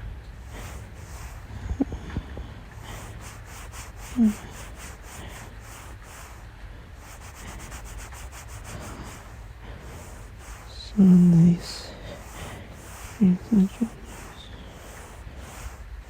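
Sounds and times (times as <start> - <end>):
fabric rubbing on microphone: 0.4 - 16.0
person humming: 3.7 - 5.5, 10.4 - 15.0.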